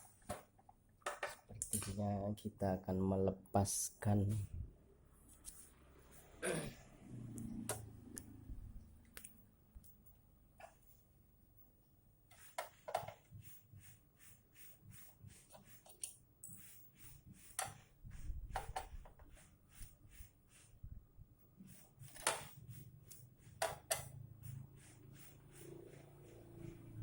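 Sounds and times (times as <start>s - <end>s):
hand tools clicking and tapping: 23.0s - 24.2s.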